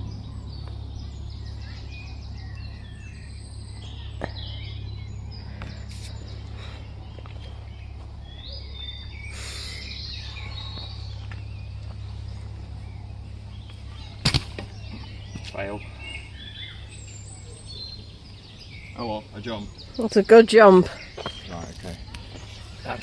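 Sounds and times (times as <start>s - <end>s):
steady low rumble: 0.0s - 20.0s
birds chirping and singing: 0.0s - 23.0s.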